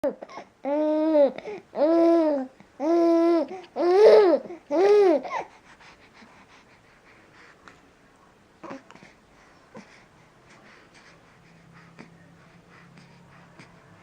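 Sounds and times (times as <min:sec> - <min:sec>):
baby cooing: 0:00.6 - 0:05.5.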